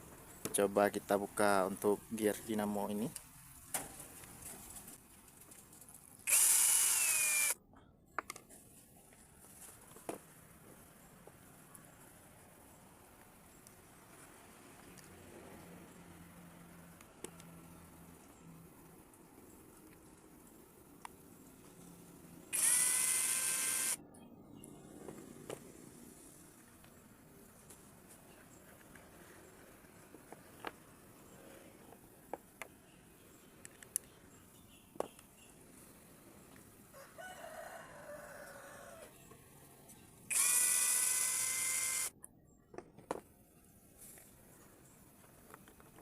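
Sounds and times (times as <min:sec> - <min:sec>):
small electric motor whirring: 0:06.2 - 0:07.6, 0:22.4 - 0:24.0, 0:40.3 - 0:42.1
small handling clicks: 0:33.6 - 0:34.2
roosters crowing: 0:36.9 - 0:39.2.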